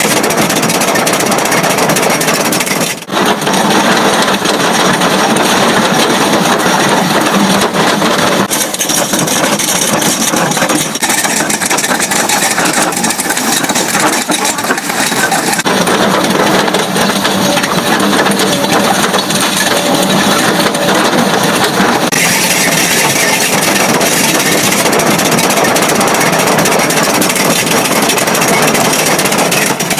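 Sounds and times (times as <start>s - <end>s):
engine running: 0.0s - 29.9s
cutting picks grinding on rock: 8.4s - 15.7s, 22.1s - 29.9s.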